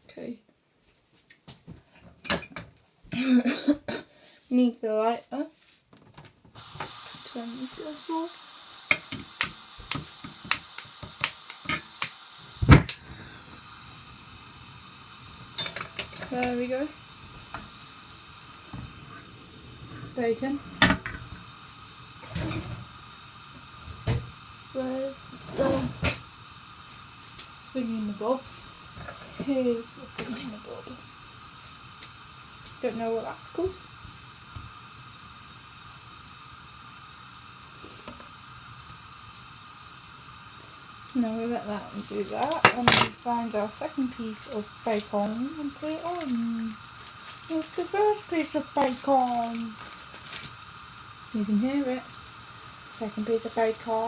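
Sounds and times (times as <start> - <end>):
faint gas hiss: 0.0 - 5.9, 6.5 - 54.0
bacon sizzling in a frying pan: 6.6 - 54.0
lighter clicking: 6.6 - 54.0
loud thump: 12.6 - 13.0.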